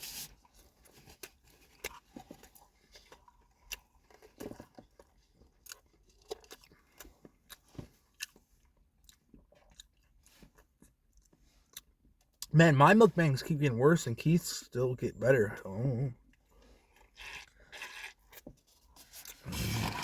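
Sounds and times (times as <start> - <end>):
person chewing food: 0.1 - 12.5, 15.6 - 20.0.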